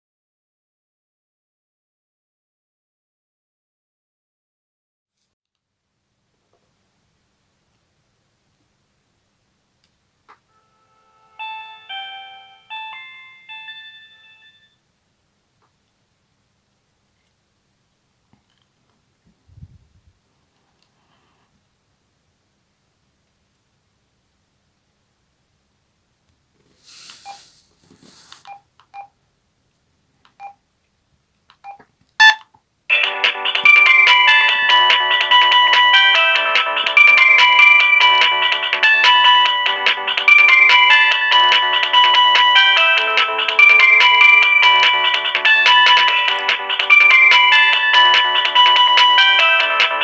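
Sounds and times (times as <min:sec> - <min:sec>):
phone polyphonic jingle: 0:10.5 - 0:14.8, 0:32.2 - 0:50.0
ringtone melody: 0:10.5 - 0:14.8, 0:32.2 - 0:50.0
phone key beeps: 0:31.6 - 0:32.5.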